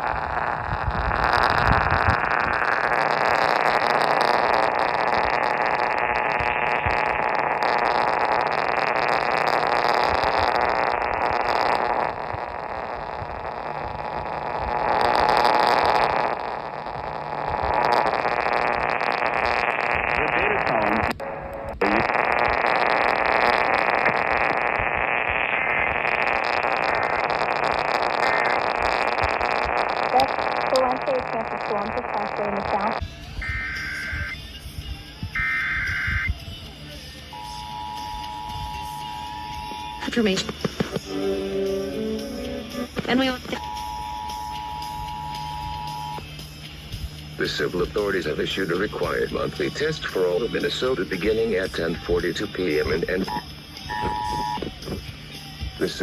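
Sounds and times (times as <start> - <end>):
radio static hiss: 0.0 - 56.0.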